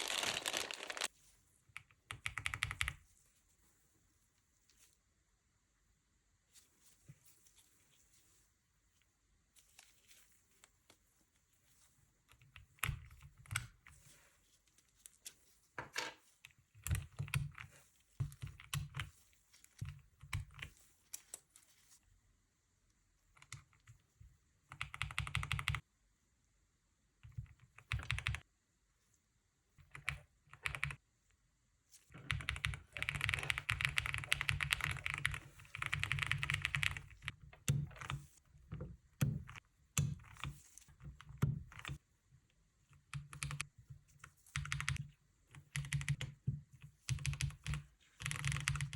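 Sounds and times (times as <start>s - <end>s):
mechanical keyboard typing: 24.7s - 25.8s, 27.4s - 28.4s, 32.2s - 38.2s, 43.1s - 43.7s, 44.5s - 46.4s, 47.1s - 48.9s.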